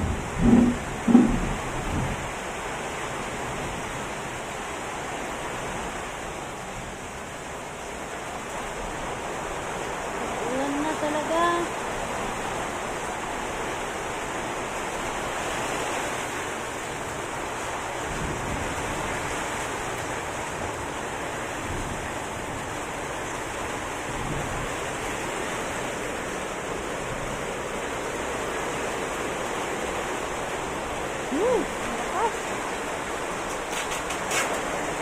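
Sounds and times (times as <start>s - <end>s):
heavy rain pouring: 0.0s - 35.0s.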